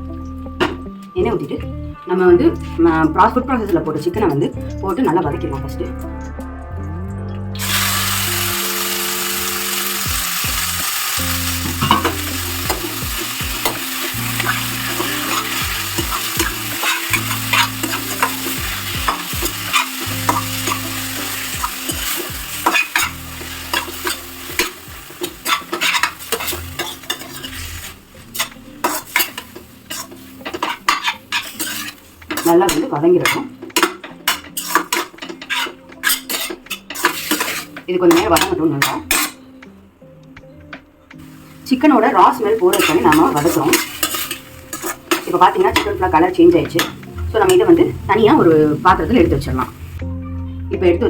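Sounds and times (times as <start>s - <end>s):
meat sizzling in oil: 7.6s - 37.8s, 42.3s - 46.0s
spoon scraping a pan: 10.9s - 39.5s, 42.2s - 49.9s.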